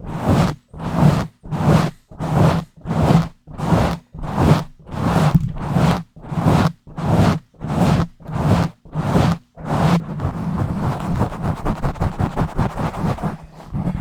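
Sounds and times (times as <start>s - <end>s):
hand scratching a microphone: 0.0s - 14.0s.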